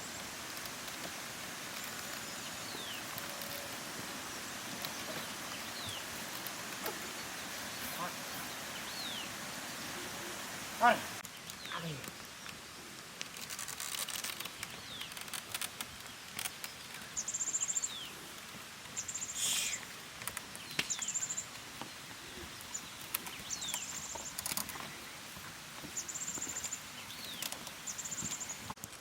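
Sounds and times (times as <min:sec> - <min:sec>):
bird high rapid trills: 0:01.8 - 0:11.9.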